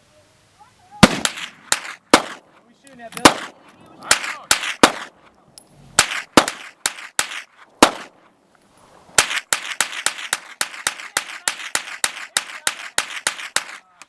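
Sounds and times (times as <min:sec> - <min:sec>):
rifle gunshots: 0:01.0 - 0:02.4, 0:03.2 - 0:05.2, 0:06.0 - 0:08.2, 0:09.2 - 0:13.8.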